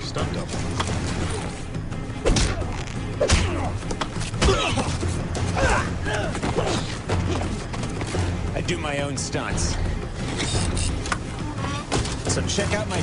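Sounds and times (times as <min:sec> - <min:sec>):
grunts and cries: 0:02.5 - 0:07.7.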